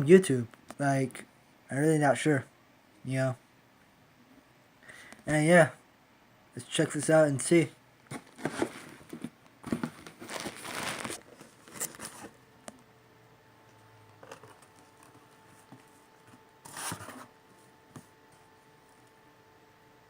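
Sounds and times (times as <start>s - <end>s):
packing tape tearing from cardboard: 8.1s - 12.4s, 16.7s - 17.3s.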